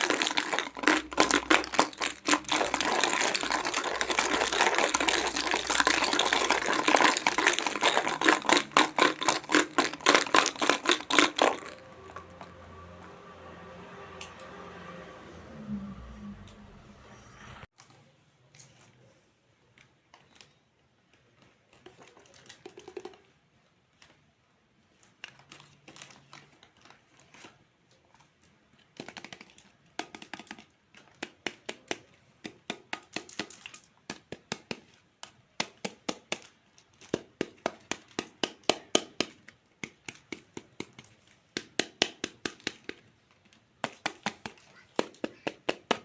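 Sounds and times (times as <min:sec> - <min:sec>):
plastic rustling: 0:00.0 - 0:12.6.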